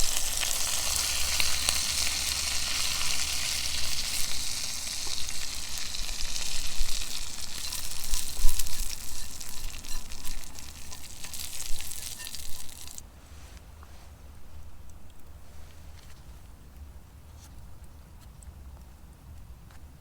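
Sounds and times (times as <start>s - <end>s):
food sizzling over campfire: 0.0s - 13.0s.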